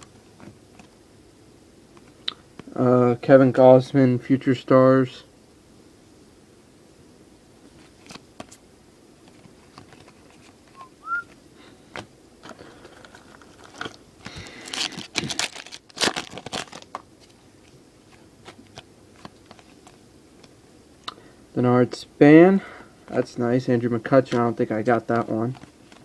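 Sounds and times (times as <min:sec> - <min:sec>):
short rising chirp: 0:10.8 - 0:11.3
foil wrapper crinkling and tearing: 0:12.7 - 0:17.0.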